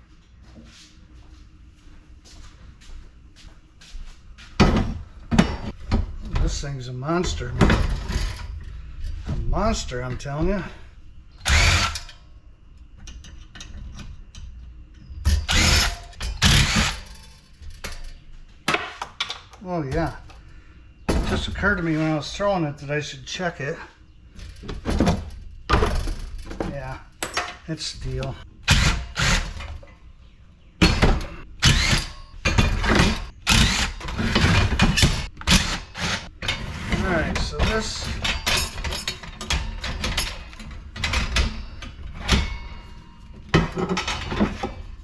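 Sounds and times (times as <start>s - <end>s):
clanking metal parts: 15.2s - 20.3s, 30.8s - 45.0s.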